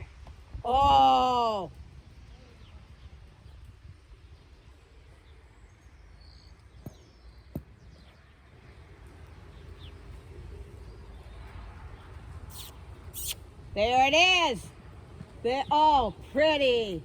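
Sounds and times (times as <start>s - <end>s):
faint bird chirps: 12.5s - 13.4s.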